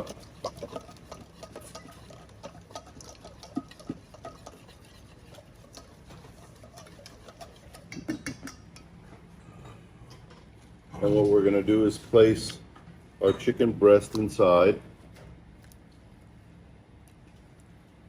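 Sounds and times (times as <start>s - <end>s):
utensil tapping a bowl: 7.7s - 8.9s.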